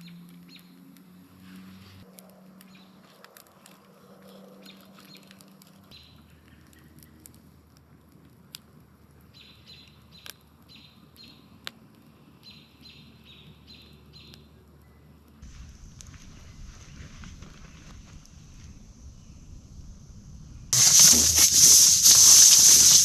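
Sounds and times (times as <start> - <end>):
small bird chirping: 20.8 - 23.0.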